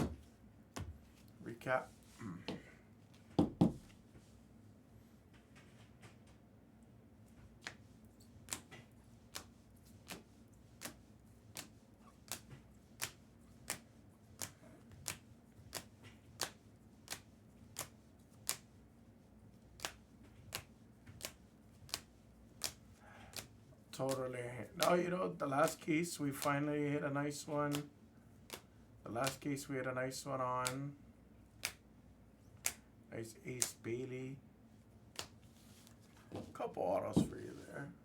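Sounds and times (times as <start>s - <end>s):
cards clicking: 19.8s - 26.6s, 27.6s - 27.9s.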